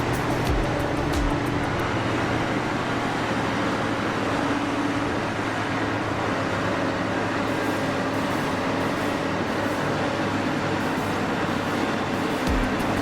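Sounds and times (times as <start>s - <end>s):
machine running with low hum: 0.0s - 13.0s.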